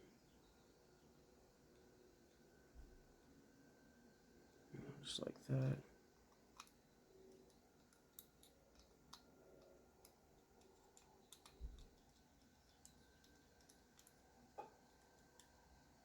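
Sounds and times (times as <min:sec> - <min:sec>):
small clicks and taps of tools: 0:06.3 - 0:15.6.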